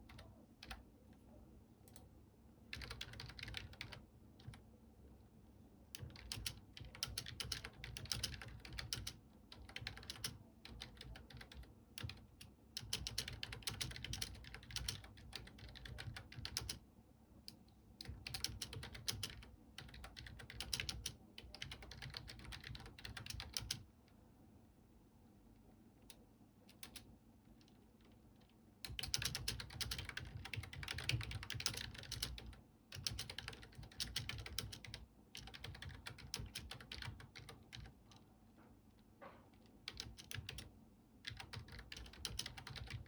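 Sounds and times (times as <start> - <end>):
typing on computer keyboard: 0.0 - 0.8, 2.7 - 4.6, 6.0 - 16.8, 18.0 - 23.8, 26.7 - 27.1, 28.8 - 38.2, 39.6 - 43.0.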